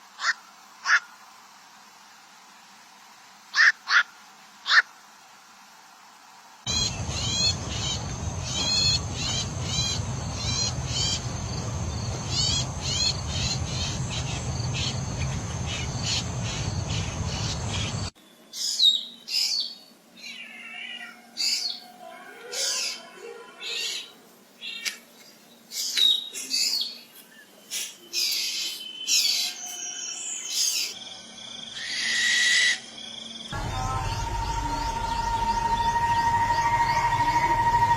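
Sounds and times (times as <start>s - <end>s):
background hiss and rumble: 0.0s - 22.1s
bird chirping high: 6.7s - 24.9s.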